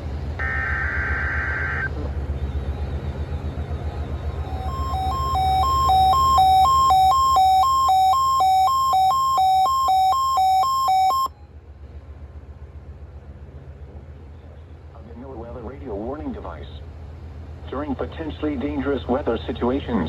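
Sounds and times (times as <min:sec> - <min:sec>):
two-pitch electronic alarm beep: 0:04.4 - 0:11.3.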